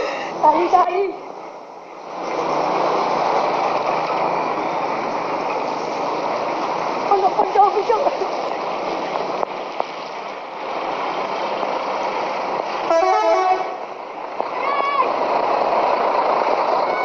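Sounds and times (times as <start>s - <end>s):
street noise: 0.0s - 17.0s
multi-tone bus horn: 12.8s - 13.9s.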